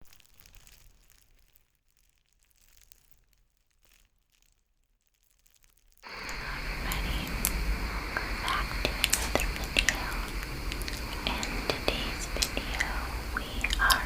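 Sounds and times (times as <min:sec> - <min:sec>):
loud even hiss: 0:06.1 - 0:14.0.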